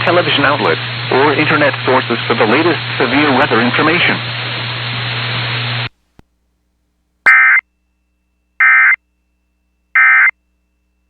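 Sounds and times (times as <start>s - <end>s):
radio hiss with low hum: 0.0s - 6.2s
digital data tone bursts: 7.3s - 7.6s.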